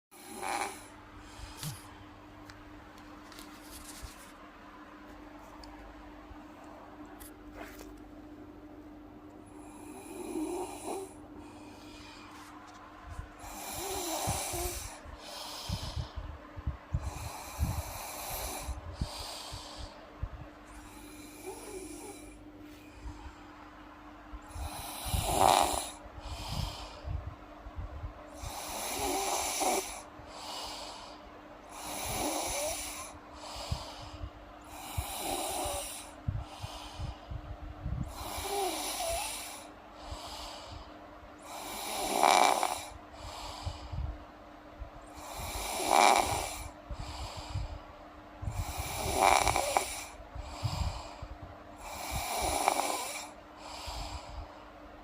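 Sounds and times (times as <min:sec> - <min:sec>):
girl snoring: 0:00.2 - 0:00.9, 0:09.6 - 0:11.6, 0:13.4 - 0:16.1, 0:17.0 - 0:20.0, 0:20.8 - 0:22.4, 0:24.5 - 0:26.9, 0:28.4 - 0:34.0, 0:34.7 - 0:37.0, 0:38.0 - 0:39.7, 0:41.4 - 0:43.0, 0:45.1 - 0:47.7, 0:48.4 - 0:51.1, 0:51.8 - 0:54.2
soft breath: 0:00.6 - 0:02.2, 0:09.4 - 0:41.7, 0:42.8 - 0:44.3, 0:45.0 - 0:55.0.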